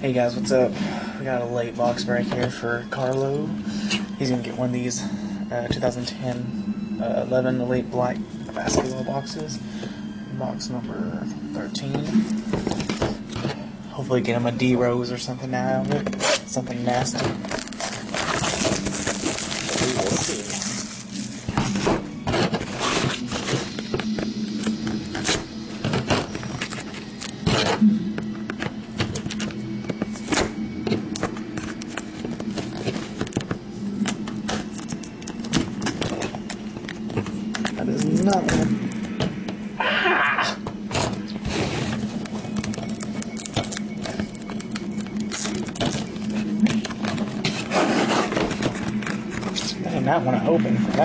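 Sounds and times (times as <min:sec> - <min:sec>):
steady low hum: 0:00.0 - 0:51.0
packaging rustling and tearing: 0:16.0 - 0:39.2, 0:40.9 - 0:49.8
packaging tearing: 0:16.2 - 0:21.5, 0:44.6 - 0:49.8
cardboard box scraping: 0:16.2 - 0:27.8, 0:45.5 - 0:49.7.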